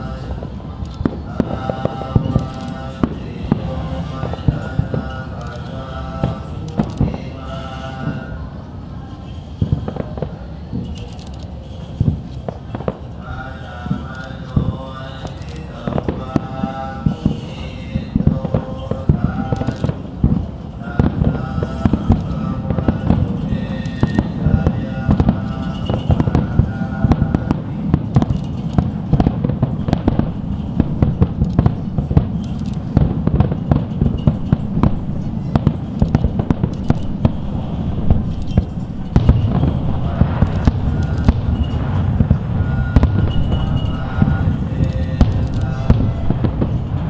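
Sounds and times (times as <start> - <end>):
fireworks bangs and crackles: 0.0 - 47.0
music playing: 20.9 - 47.0.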